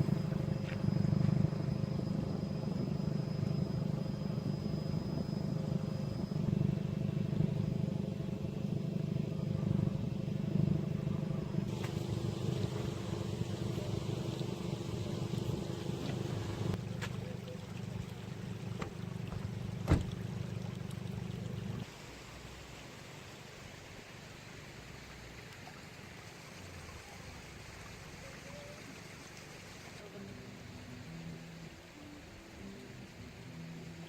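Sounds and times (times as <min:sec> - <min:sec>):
vehicle engine humming: 0:00.0 - 0:21.9
hiss: 0:11.7 - 0:16.7.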